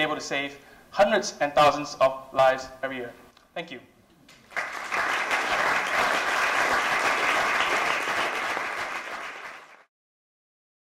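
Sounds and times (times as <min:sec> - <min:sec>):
audience applauding: 0:04.3 - 0:09.9.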